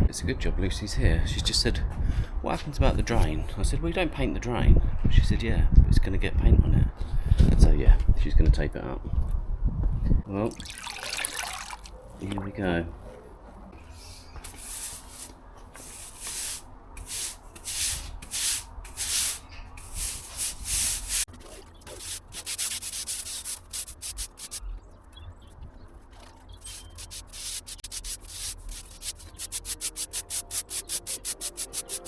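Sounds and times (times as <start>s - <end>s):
stiff broom scrubbing concrete: 14.4s - 24.6s, 26.6s - 32.0s.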